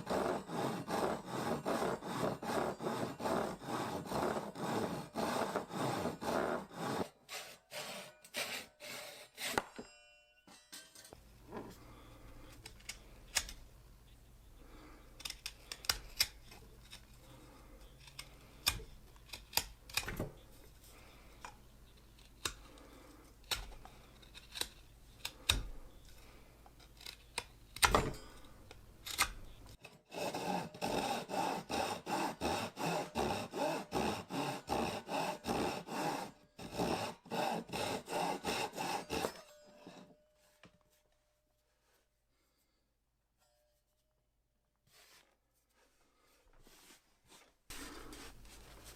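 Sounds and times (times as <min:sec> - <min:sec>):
hand tool scrapes and knocks: 0:00.0 - 0:11.9, 0:29.7 - 0:41.1
even rubbing strokes: 0:46.6 - 0:48.9.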